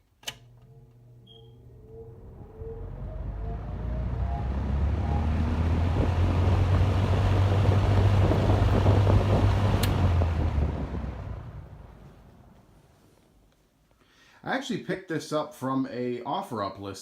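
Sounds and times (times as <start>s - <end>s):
box fan motor hum and airflow: 0.3s - 12.8s.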